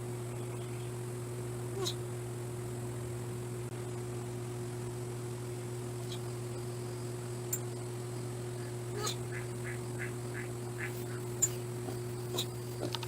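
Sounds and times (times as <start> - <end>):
steady low hum: 0.0 - 13.0
short high squeaking calls: 10.4 - 11.6.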